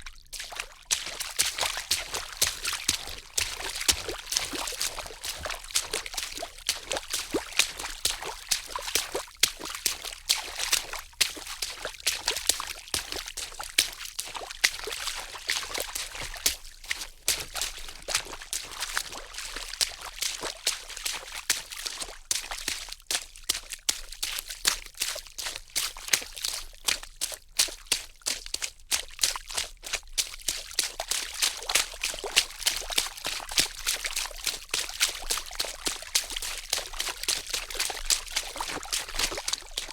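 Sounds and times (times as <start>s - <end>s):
water splashing: 0.0s - 20.9s, 31.1s - 39.9s.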